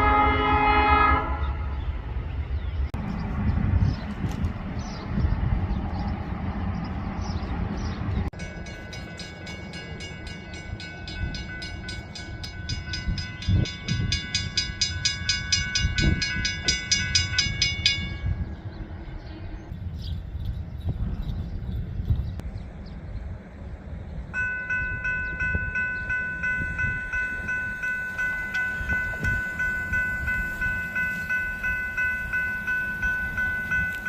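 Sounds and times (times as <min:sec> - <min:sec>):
rail vehicle rumble: 0:00.0 - 0:34.0
railroad crossing bell ringing: 0:08.3 - 0:18.7, 0:24.3 - 0:34.0.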